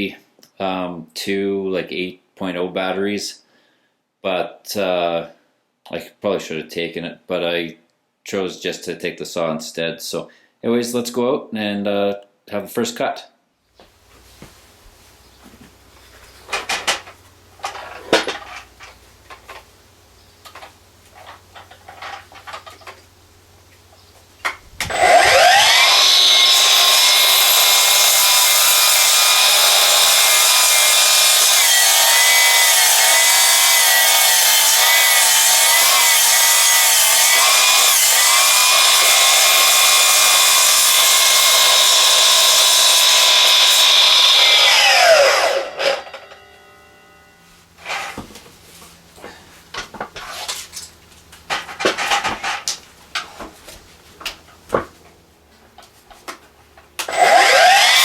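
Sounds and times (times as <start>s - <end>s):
knocks and clatters: 16.4s - 19.7s
mitre saw whining cutting log: 24.4s - 48.3s, 57.0s - 58.0s.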